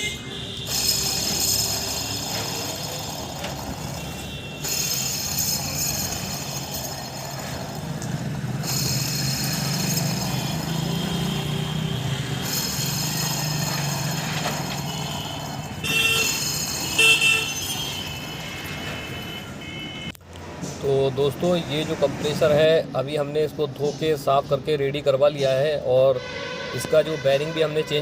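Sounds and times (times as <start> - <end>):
short horn-like tones: 0.0 - 2.7, 14.8 - 20.2, 26.2 - 28.0
pulley bearing grinding whir: 0.6 - 18.4.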